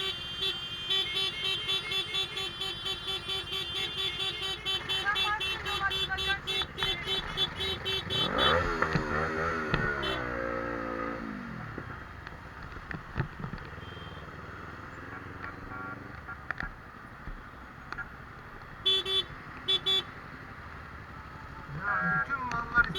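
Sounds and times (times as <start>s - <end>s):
short horn beeps: 0.0s - 8.9s
motorcycle engines revving: 0.0s - 22.9s
road noise: 0.0s - 22.9s.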